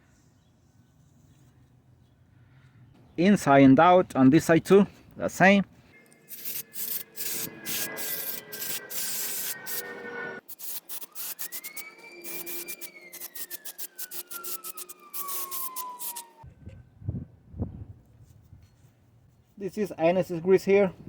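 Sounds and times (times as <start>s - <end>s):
faint siren wailing: 6.0s - 16.9s
abrasive scrubbing brake rotor: 6.2s - 16.4s.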